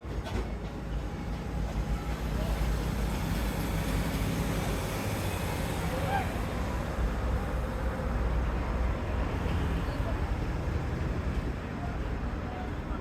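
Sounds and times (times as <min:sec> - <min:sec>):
traffic rumble: 0:00.0 - 0:13.0.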